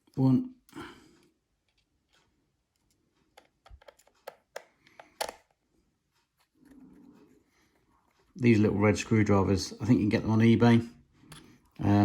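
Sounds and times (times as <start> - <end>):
screwdriver clicks on plastic: 3.4 - 5.5.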